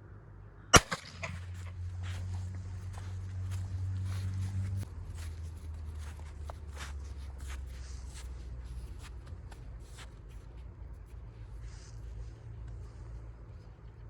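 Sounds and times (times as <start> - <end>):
steady low rumble: 0.0 - 14.0
footsteps scraping on rough ground: 1.2 - 14.0.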